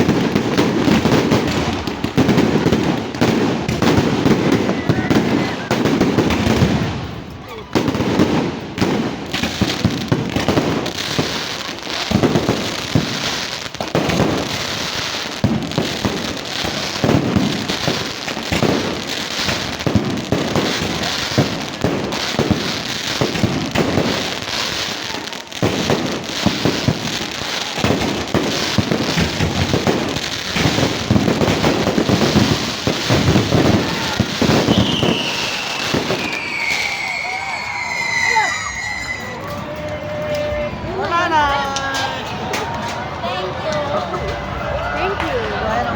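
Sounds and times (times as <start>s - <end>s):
fireworks bangs and crackling: 0.0s - 45.9s
falling whistle-like tone: 34.7s - 39.5s.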